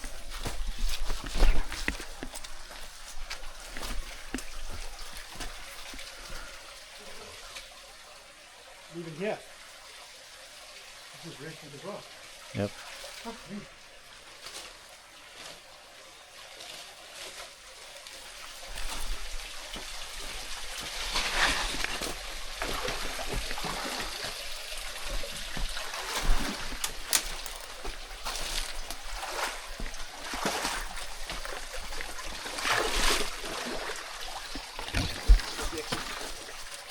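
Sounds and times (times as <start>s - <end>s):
water trickling and splashing: 0.0s - 36.9s
rustling: 18.6s - 33.5s.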